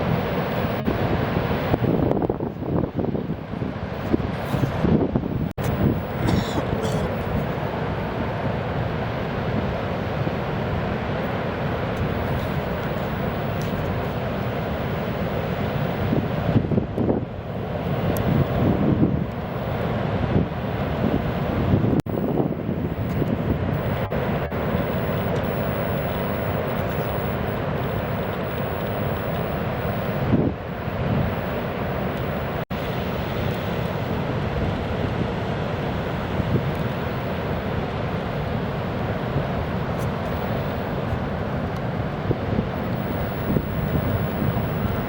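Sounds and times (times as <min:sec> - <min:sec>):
wind buffeting microphone: 0:00.0 - 0:08.6, 0:16.0 - 0:28.4, 0:29.6 - 0:31.4
ocean waves breaking: 0:05.6 - 0:45.0.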